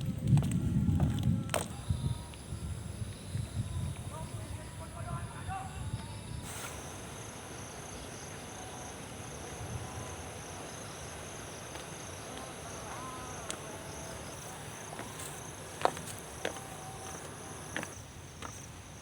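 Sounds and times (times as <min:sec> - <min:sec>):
insects chirring: 0:00.6 - 0:19.0.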